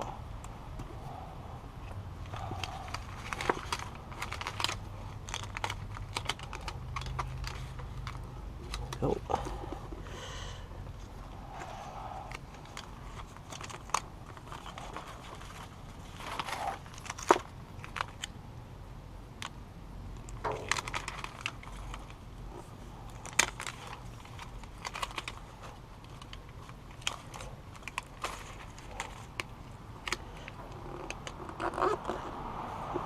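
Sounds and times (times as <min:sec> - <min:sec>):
low steady hum: 0:00.0 - 0:33.0
foil crinkling and crumpling: 0:02.3 - 0:09.2, 0:12.2 - 0:18.3, 0:20.3 - 0:32.0.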